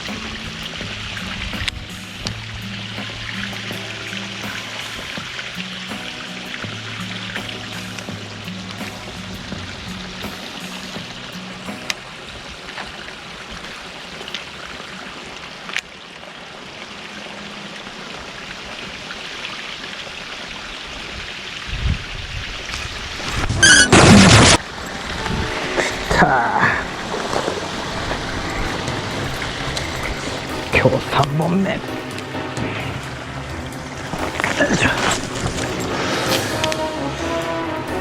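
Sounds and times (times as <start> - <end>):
low rumbling: 0.0 - 5.9, 21.7 - 38.0
background music with bass line: 0.0 - 12.0, 23.7 - 38.0
steady hiss: 0.0 - 38.0.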